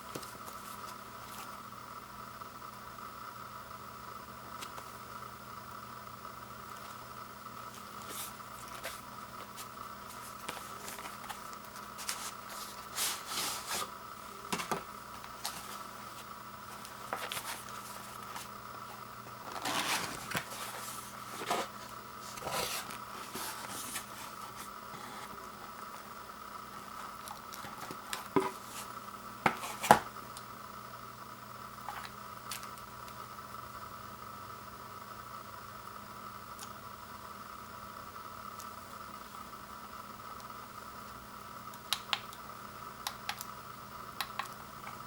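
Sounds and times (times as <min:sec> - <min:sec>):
packaging scraping and rustling: 0:07.8 - 0:25.8, 0:26.8 - 0:30.1.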